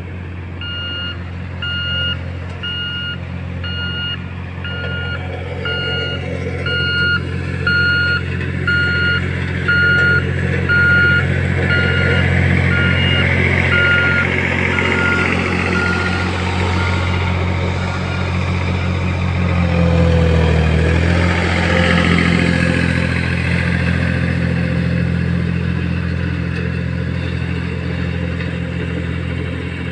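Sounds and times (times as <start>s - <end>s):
heavy vehicle engine humming: 0.0s - 29.9s
reversing alarm beeping: 0.6s - 17.4s.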